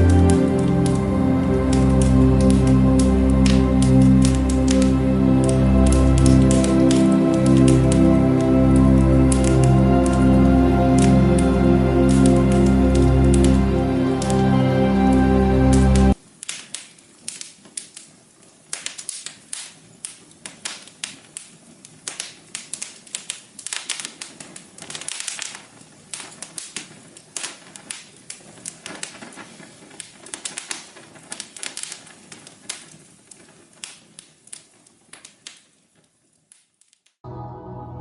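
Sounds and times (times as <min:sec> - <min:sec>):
wood fire crackling: 0:00.0 - 0:37.2.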